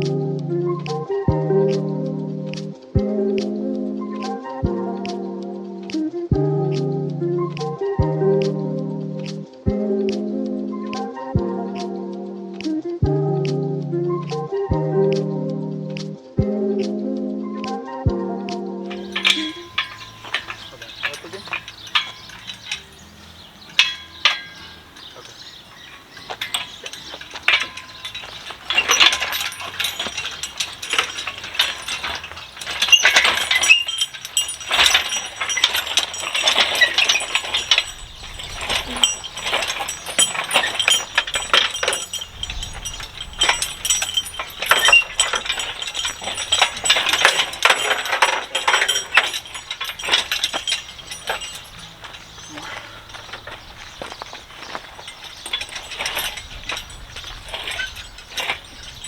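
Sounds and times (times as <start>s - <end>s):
metal tools clinking and clanking: 18.9s - 59.0s.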